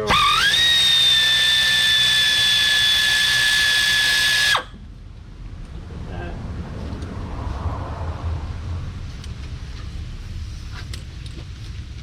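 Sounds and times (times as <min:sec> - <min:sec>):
power drill whining: 0:00.0 - 0:04.8.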